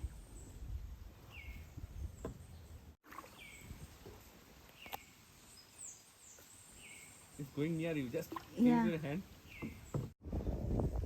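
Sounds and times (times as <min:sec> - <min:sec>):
bird chirping: 0:01.2 - 0:03.8, 0:04.7 - 0:08.1, 0:09.4 - 0:10.2.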